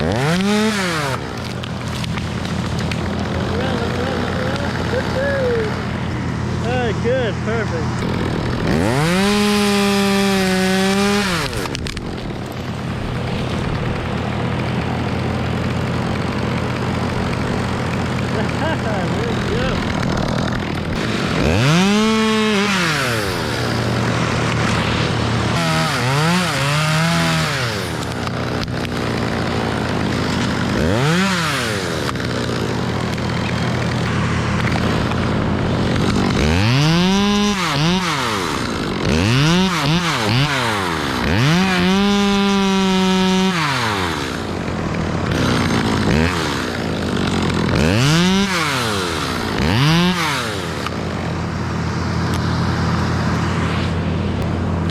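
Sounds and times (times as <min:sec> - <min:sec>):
chainsaw idling and revving: 0:00.0 - 0:54.9.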